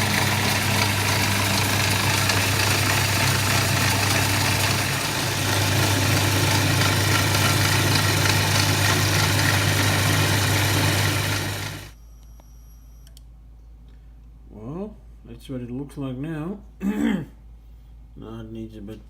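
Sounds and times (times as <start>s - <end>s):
milling machine humming: 0.0s - 12.0s.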